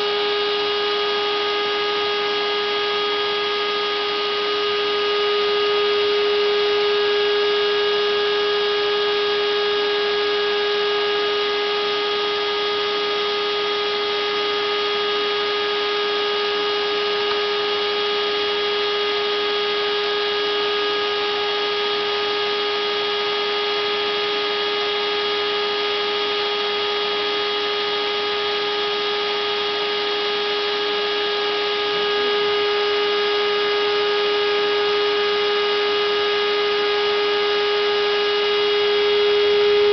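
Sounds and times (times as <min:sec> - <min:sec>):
router spindle motor whining: 0:38.1 - 0:39.9.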